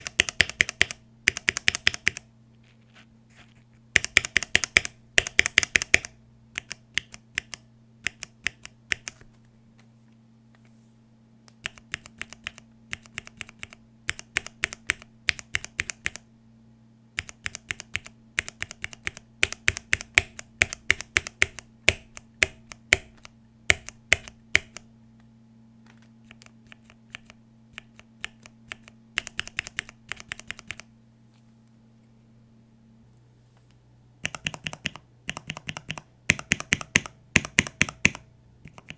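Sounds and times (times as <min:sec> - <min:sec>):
keyboard switches clacking: 0:00.0 - 0:02.2, 0:04.0 - 0:09.2, 0:11.5 - 0:16.2, 0:17.2 - 0:24.9, 0:26.2 - 0:30.9, 0:34.2 - 0:38.9.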